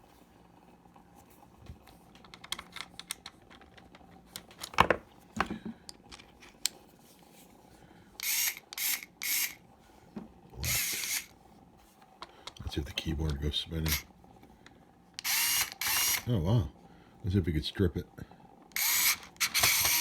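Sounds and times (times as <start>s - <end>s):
cordless screwdriver motor whirring: 8.2s - 9.6s, 10.6s - 11.3s, 13.8s - 14.0s, 15.2s - 16.3s, 18.7s - 20.0s.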